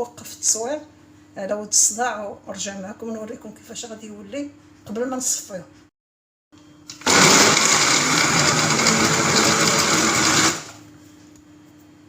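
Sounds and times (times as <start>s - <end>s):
electric blender running: 6.9s - 10.9s.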